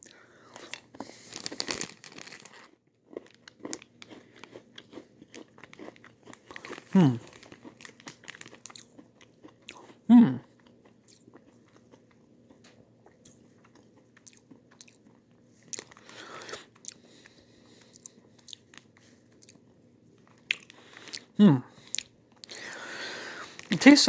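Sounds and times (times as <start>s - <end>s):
person chewing candy: 0.0s - 24.0s
person humming: 7.0s - 7.2s, 10.1s - 10.4s.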